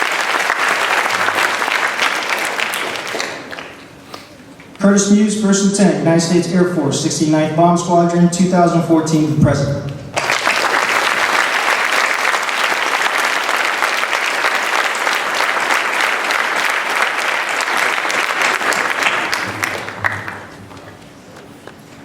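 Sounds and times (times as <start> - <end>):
audience applause: 0.0 - 3.9, 10.2 - 21.0.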